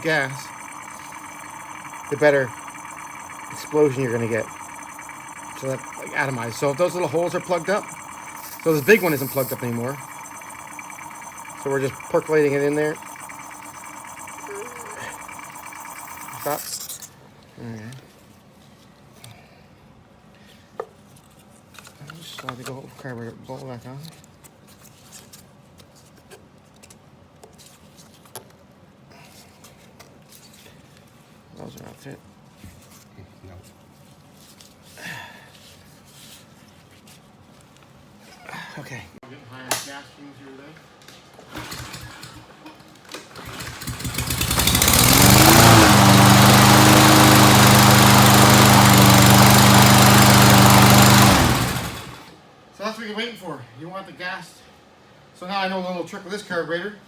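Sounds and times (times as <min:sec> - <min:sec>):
lawn mower engine running: 0:43.4 - 0:52.2.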